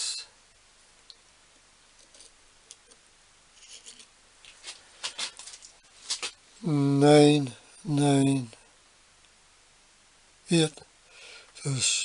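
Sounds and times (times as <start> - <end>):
light metal scrapes: 3.6 - 6.4
person speaking: 6.2 - 8.6, 10.5 - 10.8, 11.6 - 12.0.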